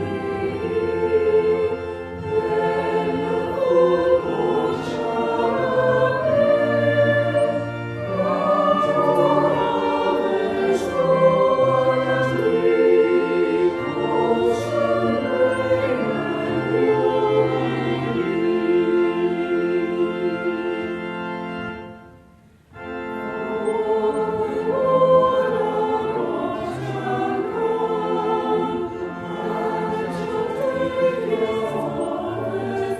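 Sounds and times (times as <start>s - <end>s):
choir singing held notes: 0.0s - 32.9s
low accompanying notes: 0.0s - 32.9s.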